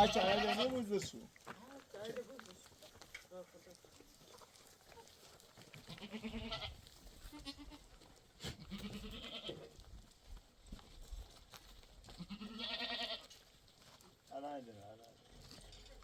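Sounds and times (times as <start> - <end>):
goats and sheep bleating: 0.0 - 1.2, 3.6 - 9.8, 12.0 - 13.5.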